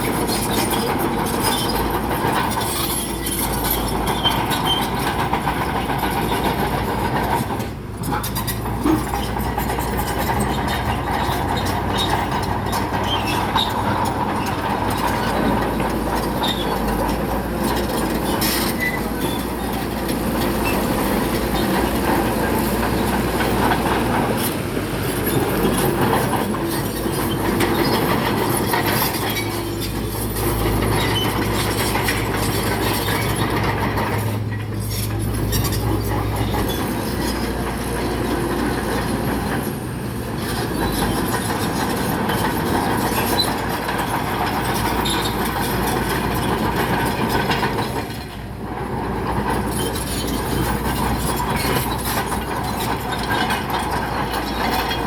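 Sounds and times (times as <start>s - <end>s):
diesel engine under load: 0.0s - 55.0s
steel crawler tracks clanking: 0.0s - 55.0s.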